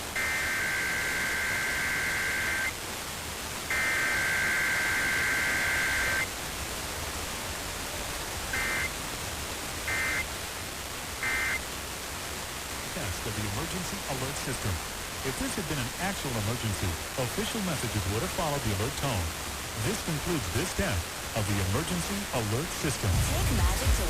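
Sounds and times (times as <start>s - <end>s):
data bursts: 0.0s - 2.8s, 3.7s - 6.3s, 8.6s - 8.9s, 9.9s - 10.3s, 11.2s - 11.6s
radio hiss: 0.0s - 24.0s.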